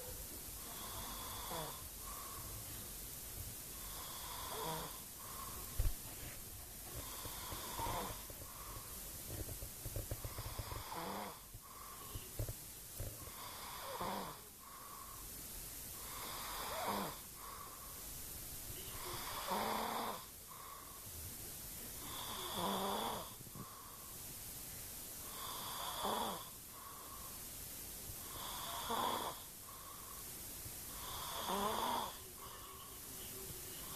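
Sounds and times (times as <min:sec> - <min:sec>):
faint breathing: 0:00.0 - 0:24.4, 0:25.2 - 0:33.9
man snoring: 0:00.6 - 0:02.2, 0:03.8 - 0:05.5, 0:07.0 - 0:08.3, 0:10.2 - 0:11.5, 0:13.3 - 0:14.5, 0:16.0 - 0:17.3, 0:19.0 - 0:20.7, 0:22.0 - 0:23.4, 0:25.3 - 0:26.6, 0:28.2 - 0:29.5, 0:31.0 - 0:32.5.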